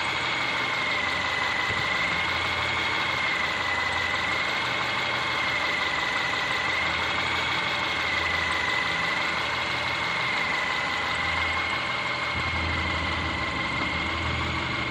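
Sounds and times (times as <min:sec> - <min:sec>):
steady high whine: 0:00.0 - 0:14.9
car engine idling with a knock: 0:01.4 - 0:02.2.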